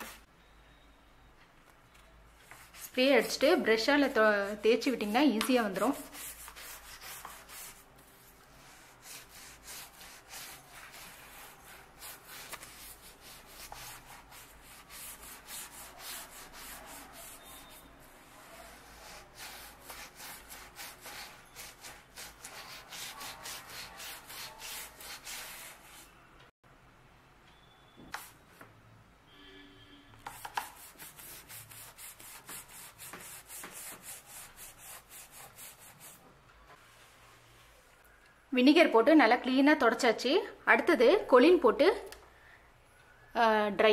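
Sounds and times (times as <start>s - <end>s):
brush scrubbing rubber: 5.8s - 26.1s, 30.3s - 36.2s.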